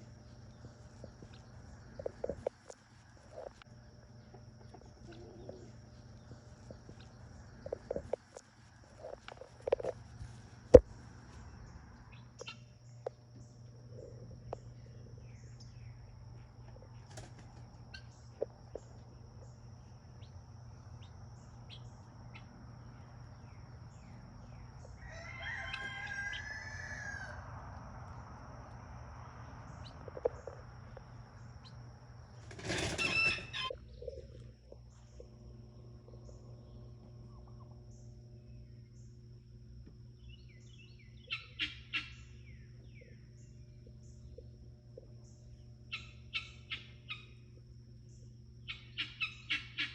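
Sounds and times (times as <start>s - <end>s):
steady low hum: 0.0s - 49.9s
poultry crowing call: 24.9s - 27.7s, 32.8s - 33.8s
poultry harsh squawk: 32.5s - 33.8s, 48.7s - 49.9s.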